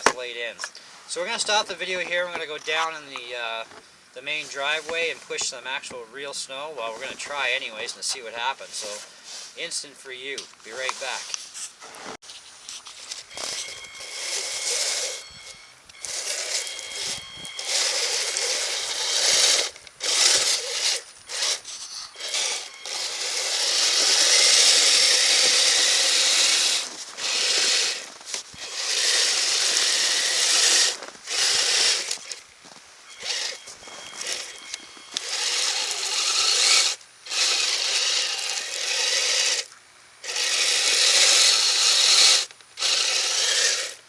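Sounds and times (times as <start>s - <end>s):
tracks crunching in snow: 0.0s - 36.8s
electric motor whine: 12.6s - 44.0s.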